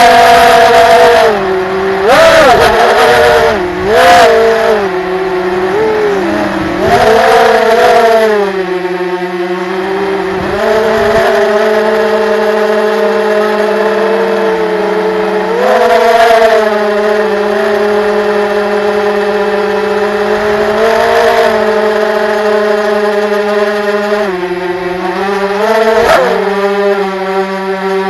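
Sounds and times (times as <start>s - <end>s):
drone propellers whining: 0.0s - 28.0s.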